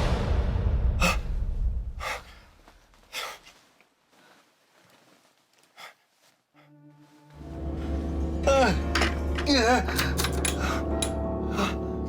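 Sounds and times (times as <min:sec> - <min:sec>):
person gasping: 0:01.0 - 0:01.4, 0:02.0 - 0:04.4, 0:05.7 - 0:06.8, 0:09.8 - 0:12.0.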